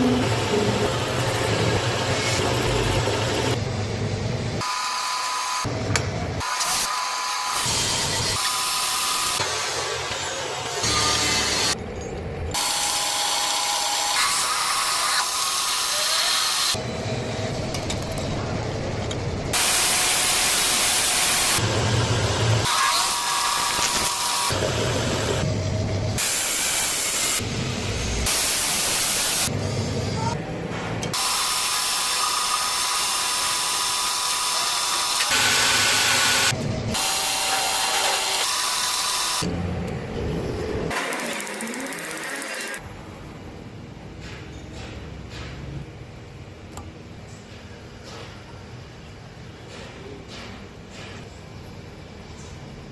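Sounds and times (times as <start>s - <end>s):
metal lathe cutting hiss: 19.6s - 25.4s, 26.2s - 29.5s
metal lathe cutting metal: 31.2s - 39.5s.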